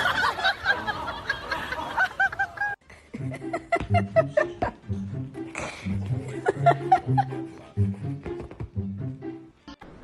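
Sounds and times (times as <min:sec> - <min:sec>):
people laughing: 0:00.0 - 0:04.8, 0:06.1 - 0:08.1.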